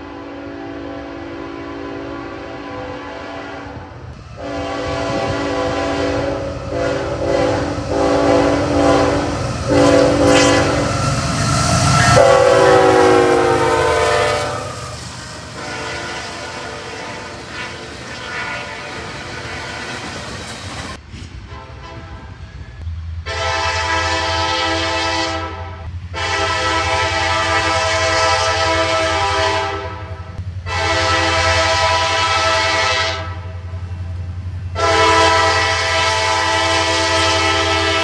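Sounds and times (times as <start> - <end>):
locomotive air horn blasts: 0.0 - 11.1, 11.8 - 20.4, 21.5 - 22.5, 23.2 - 33.5, 34.8 - 38.0
train wheels clattering on rails: 14.4 - 21.5.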